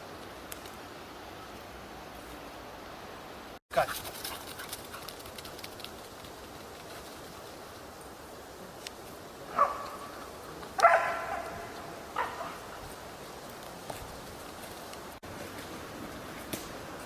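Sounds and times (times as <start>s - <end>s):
dog barking: 9.5s - 10.0s, 10.8s - 12.6s.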